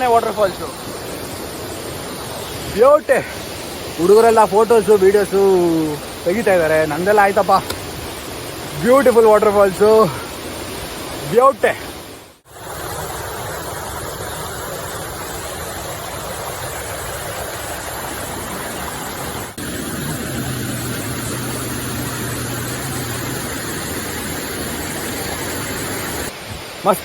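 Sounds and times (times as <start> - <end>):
waterfall roaring: 0.0 - 27.0
steady low hum: 18.8 - 26.3.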